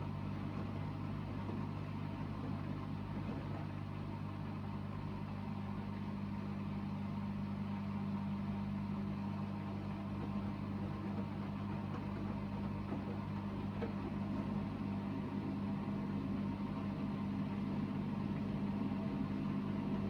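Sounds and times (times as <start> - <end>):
washing machine spinning: 0.0 - 20.0.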